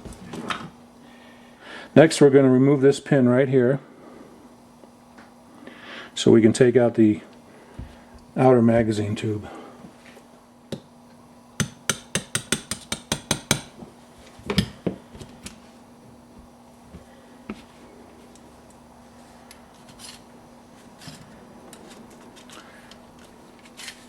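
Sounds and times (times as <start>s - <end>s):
hammer tapping metal punch: 11.6s - 13.8s
faint clicks of metal parts: 21.0s - 24.0s.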